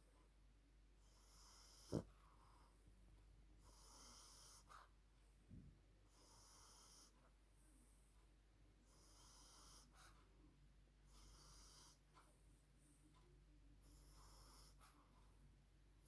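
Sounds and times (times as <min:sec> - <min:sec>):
puppy breathing noisily in sleep: 0:01.0 - 0:03.0, 0:03.6 - 0:05.1, 0:06.0 - 0:08.2, 0:08.8 - 0:10.4, 0:11.0 - 0:13.1, 0:13.8 - 0:15.4.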